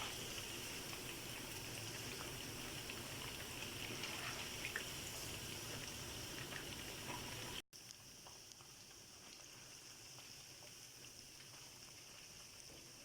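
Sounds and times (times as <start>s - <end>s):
chicken deep-frying in oil: 0.0s - 13.0s.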